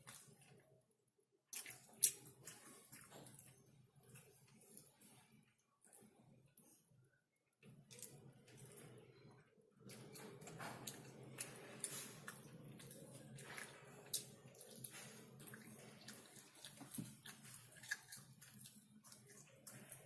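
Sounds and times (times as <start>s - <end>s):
wet chewing and mouth clicks: 1.5s - 5.2s, 9.8s - 20.0s.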